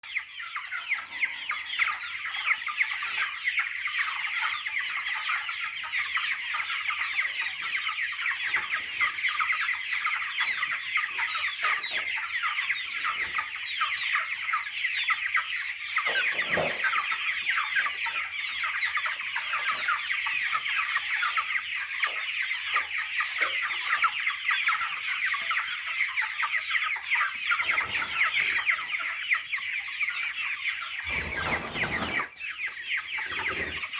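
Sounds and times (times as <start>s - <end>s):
chicks peeping and clucking: 0.0s - 33.9s.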